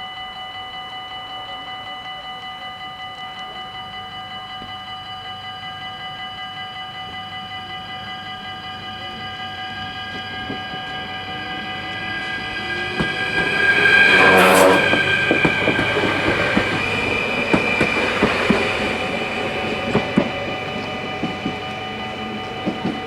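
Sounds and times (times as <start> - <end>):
level crossing bells ringing: 0.0 - 23.0
electric train passing: 1.6 - 23.0
train motor whine: 7.0 - 23.0.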